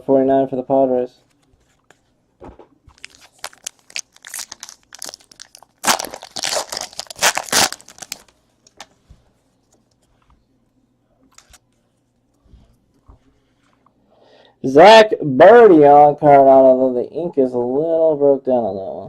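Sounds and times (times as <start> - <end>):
wrapper tearing and crinkling: 2.9 - 8.3.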